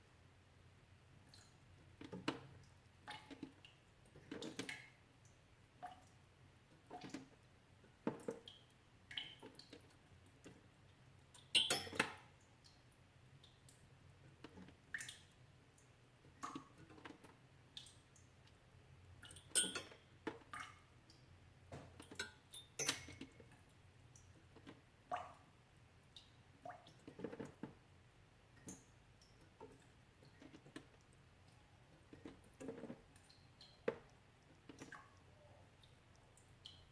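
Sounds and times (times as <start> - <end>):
water drops dripping: 6.8 - 17.0, 17.7 - 18.6, 19.2 - 27.6, 32.2 - 36.9.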